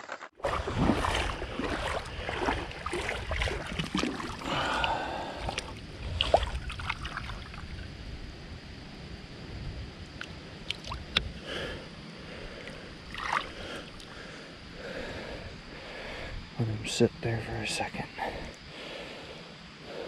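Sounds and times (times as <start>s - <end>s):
water sloshing and splashing: 0.0s - 7.8s, 10.2s - 11.3s, 12.6s - 14.3s.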